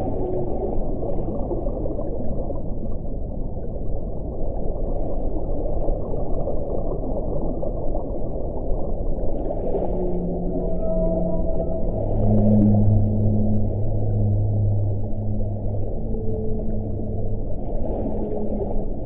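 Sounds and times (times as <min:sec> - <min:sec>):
whale-like moan: 0:00.0 - 0:01.7, 0:09.4 - 0:19.0
underwater low rumble: 0:00.0 - 0:19.0.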